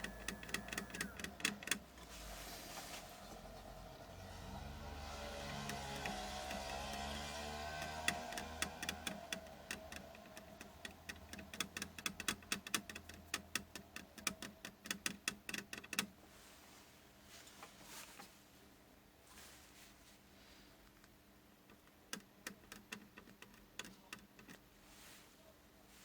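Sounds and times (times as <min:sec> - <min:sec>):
sharp small clicks and taps: 0:05.6 - 0:16.1, 0:20.9 - 0:24.7.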